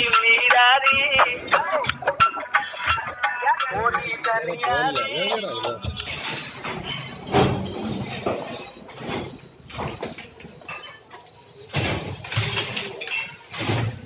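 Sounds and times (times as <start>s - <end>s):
debris clinking: 5.8s - 14.0s.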